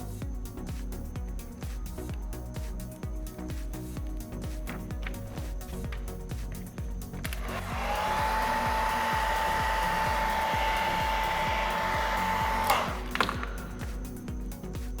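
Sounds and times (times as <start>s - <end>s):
hair dryer motor whine: 7.2s - 14.0s.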